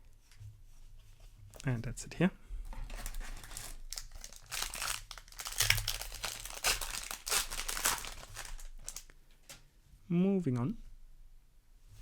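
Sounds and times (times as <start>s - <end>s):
foil wrapper crinkling: 2.8s - 9.1s.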